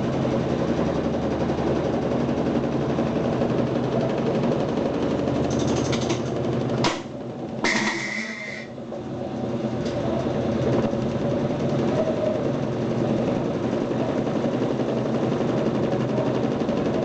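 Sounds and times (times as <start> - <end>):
washing machine rattling: 0.0 - 17.0
hissing squeal: 7.7 - 8.8.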